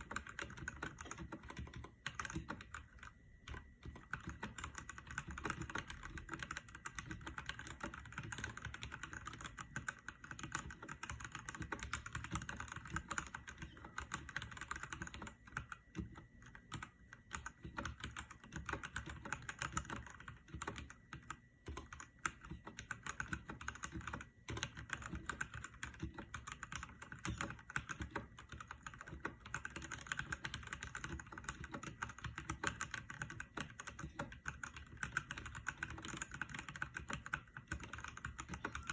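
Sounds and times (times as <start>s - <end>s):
fast typing on mechanical keyboard: 0.0s - 38.9s.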